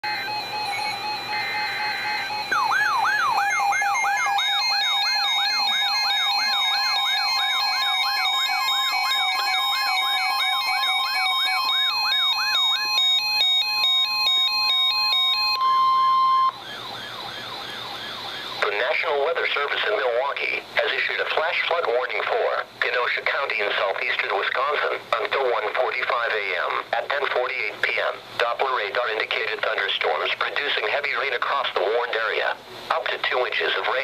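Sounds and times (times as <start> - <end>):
steady high tone: 0.0 - 16.6
electronic siren wailing: 0.0 - 18.8
electronic beeps: 0.1 - 16.6.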